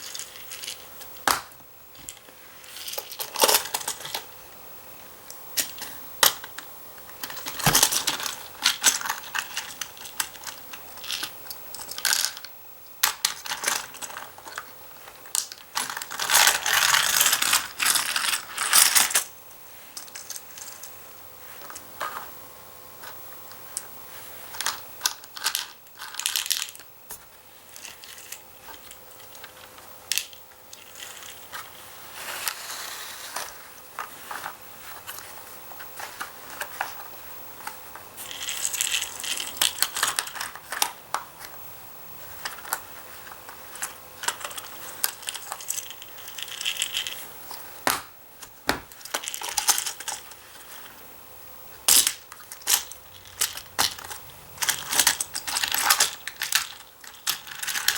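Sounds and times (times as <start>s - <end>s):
toy cars clicking and clattering: 0.0s - 1.5s, 2.1s - 4.3s, 5.6s - 19.3s, 24.5s - 26.9s, 27.7s - 33.6s, 37.6s - 41.2s, 42.4s - 47.6s, 48.9s - 50.9s, 51.8s - 57.9s.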